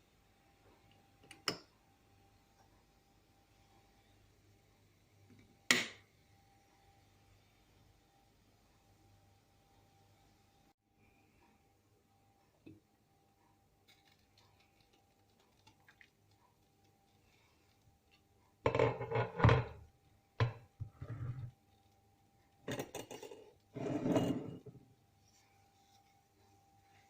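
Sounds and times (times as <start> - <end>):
pots and utensils clattering: 18.7 - 19.8, 22.6 - 24.8.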